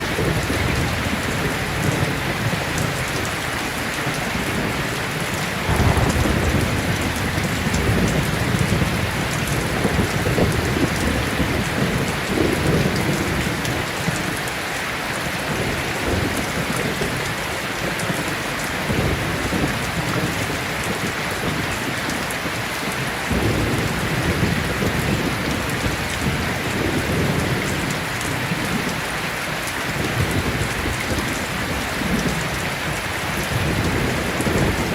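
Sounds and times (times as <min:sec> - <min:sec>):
steady rain hiss: 0:00.0 - 0:34.9
deep low rumbles: 0:05.7 - 0:09.1.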